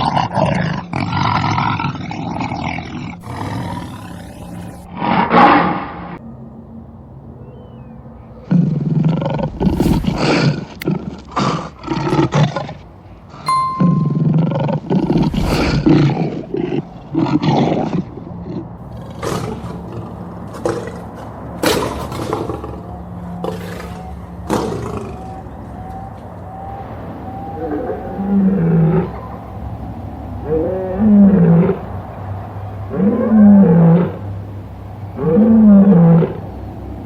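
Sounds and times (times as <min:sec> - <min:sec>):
lion roaring: 0:00.0 - 0:06.2, 0:08.4 - 0:12.7, 0:15.1 - 0:29.6, 0:35.2 - 0:36.5.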